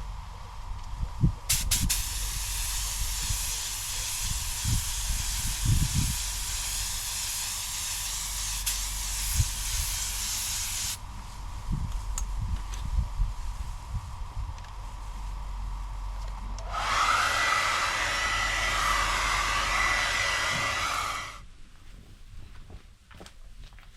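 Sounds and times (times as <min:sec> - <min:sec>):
spray gun air hiss: 0:01.5 - 0:11.0, 0:16.6 - 0:21.4.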